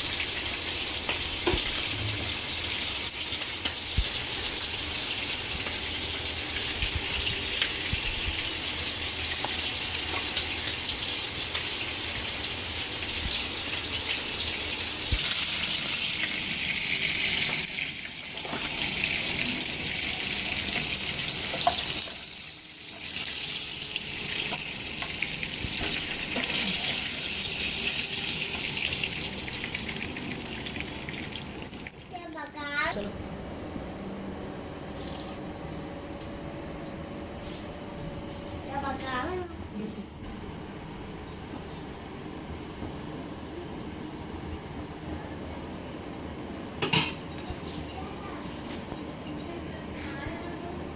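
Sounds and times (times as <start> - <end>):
food sizzling in a pan: 0.0 - 31.6.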